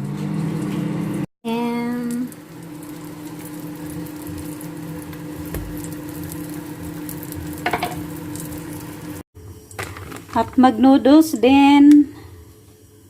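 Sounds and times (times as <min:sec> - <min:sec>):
food sizzling in a hot pan: 0:01.5 - 0:11.4.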